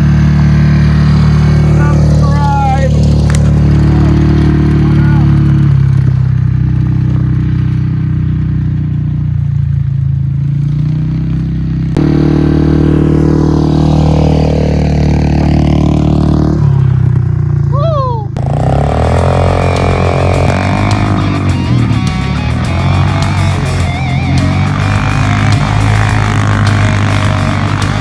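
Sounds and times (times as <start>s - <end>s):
atv engine revving: 0.0s - 28.0s.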